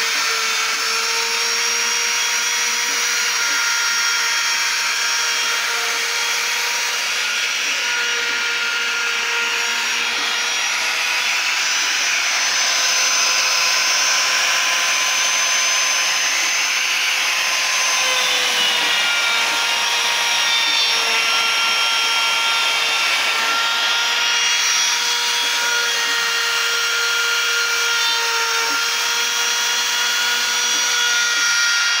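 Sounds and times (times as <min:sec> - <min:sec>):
router spindle high whine: 0:00.0 - 0:32.0.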